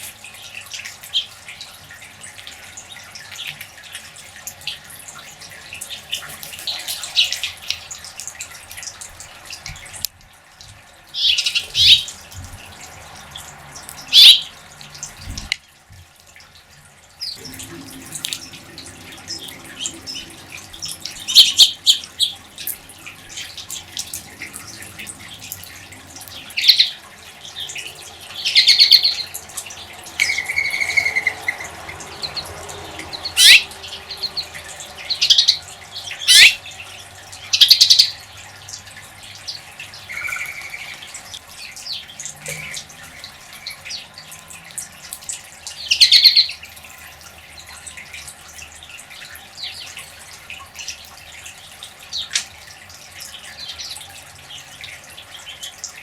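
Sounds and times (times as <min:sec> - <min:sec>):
crows calling: 0:14.1 - 0:14.5, 0:33.2 - 0:36.6.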